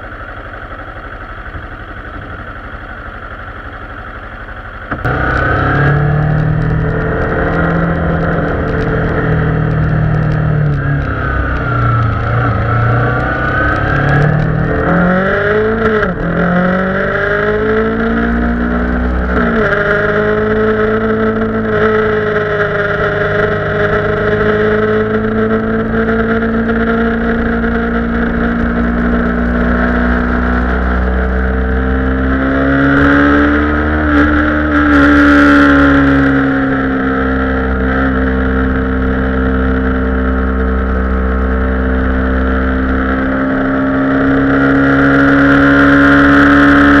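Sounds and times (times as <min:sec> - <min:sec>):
motorcycle engine running at speed: 0:00.0 - 0:47.0.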